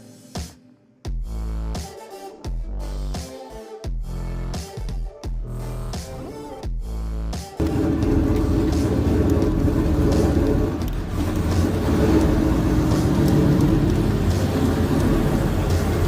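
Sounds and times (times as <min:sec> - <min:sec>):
vehicle engine low rumble: 0:07.6 - 0:16.0.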